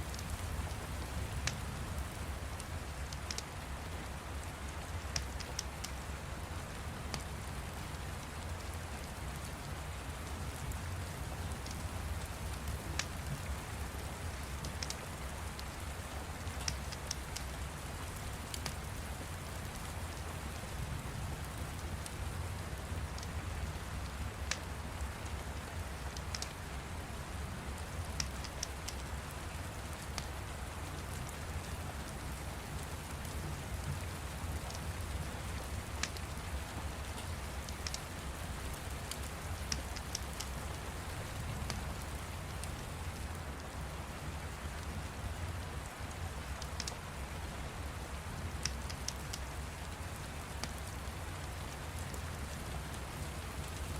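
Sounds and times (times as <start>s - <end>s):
wood fire crackling: 0.0s - 6.0s, 27.8s - 43.8s
steady rain falling: 0.0s - 53.9s.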